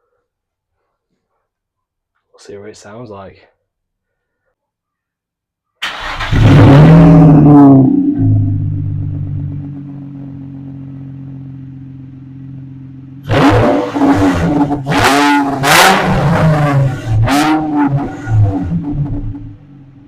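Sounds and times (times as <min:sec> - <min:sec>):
engine throttle blips: 0:05.8 - 0:20.0
car engine idling: 0:06.1 - 0:20.0.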